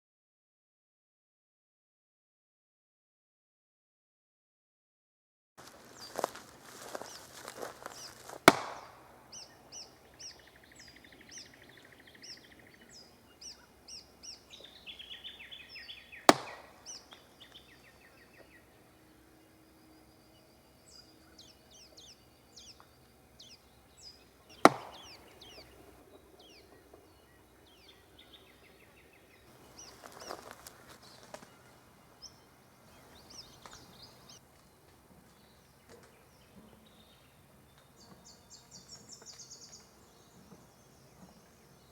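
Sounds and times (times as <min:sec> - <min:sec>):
birds chirping: 0:05.6 - 0:41.9
wood knocking on tree trunk: 0:06.2 - 0:09.1, 0:16.3 - 0:17.2, 0:24.6 - 0:25.3.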